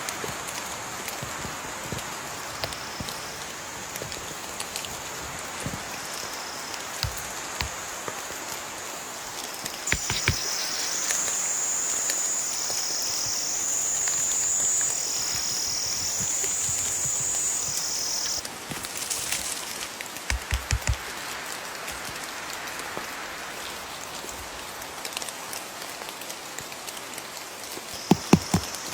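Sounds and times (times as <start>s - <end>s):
shrill insect song: 0.0s - 18.4s, 27.9s - 28.9s
steady rain: 0.0s - 28.9s.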